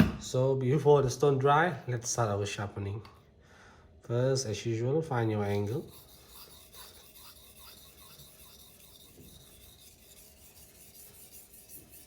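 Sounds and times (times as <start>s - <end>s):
knife scraping on whetstone: 5.4s - 12.0s.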